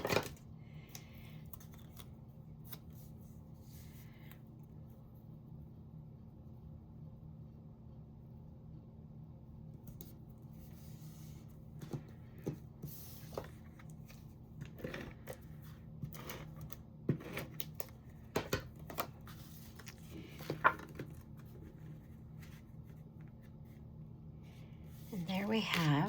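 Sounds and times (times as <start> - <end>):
paper rustling: 10.6 - 23.8.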